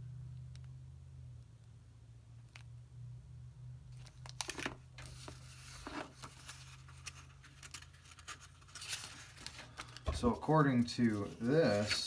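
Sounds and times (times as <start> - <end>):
paper rustling and crinkling: 4.0 - 12.0.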